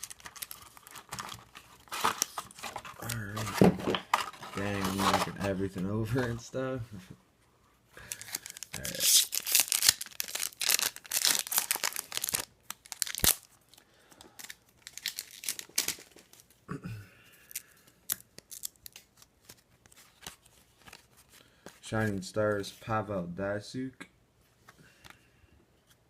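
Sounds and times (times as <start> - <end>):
wrapper tearing open: 0.0 - 3.6, 8.1 - 16.4, 17.5 - 19.6
wrapper and cards crinkling: 0.0 - 6.5, 8.0 - 16.6, 17.4 - 21.9.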